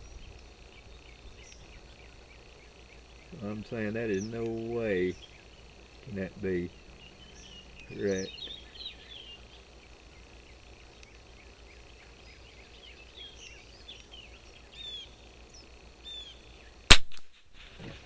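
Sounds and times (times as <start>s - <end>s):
faint bird chirps: 0.0s - 16.9s
rifle shot: 16.9s - 17.6s.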